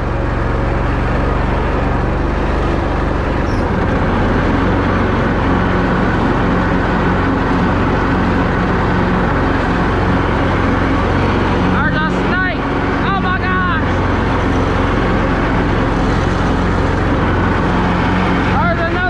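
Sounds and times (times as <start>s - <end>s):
mower blades cutting grass: 0.0s - 19.0s
riding mower engine running: 0.0s - 19.0s.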